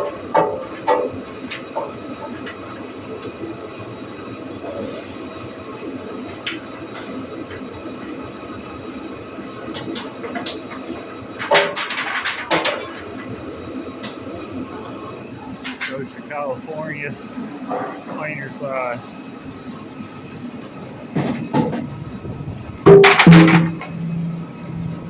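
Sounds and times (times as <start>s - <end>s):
clattering knocks: 0.0s - 2.6s, 9.7s - 13.3s, 15.6s - 16.5s, 21.1s - 24.2s
sawmill machinery running: 0.0s - 25.0s.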